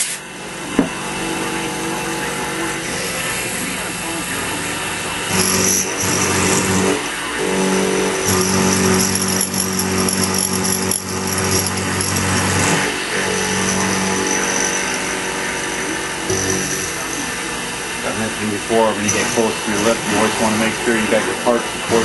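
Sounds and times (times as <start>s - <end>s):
end mill cutting metal: 0.0s - 22.0s
milling machine running: 0.1s - 22.0s.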